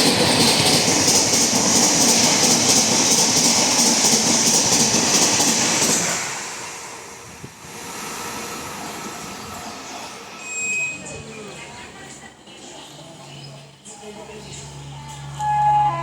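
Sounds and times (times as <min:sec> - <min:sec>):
express train passing: 0:00.0 - 0:16.0.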